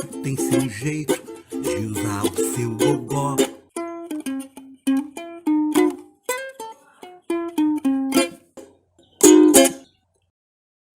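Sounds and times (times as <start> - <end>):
plucked notes: 0.0 - 10.0.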